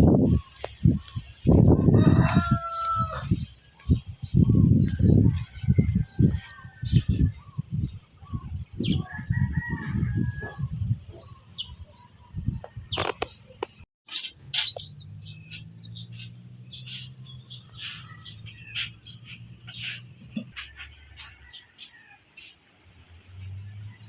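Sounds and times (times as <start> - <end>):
birds chirping: 0.1 - 24.0
rooster crowing: 1.7 - 3.4, 9.0 - 10.7.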